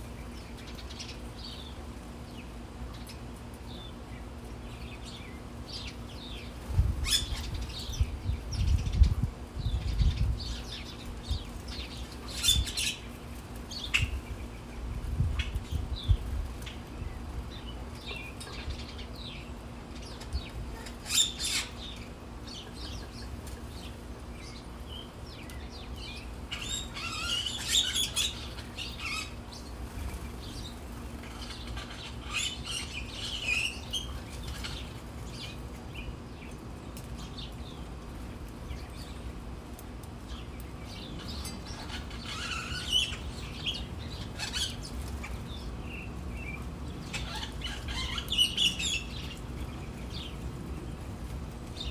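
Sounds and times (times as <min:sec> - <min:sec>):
small birds chirping: 0:00.0 - 0:51.9
wings fluttering and splashing: 0:26.2 - 0:51.9.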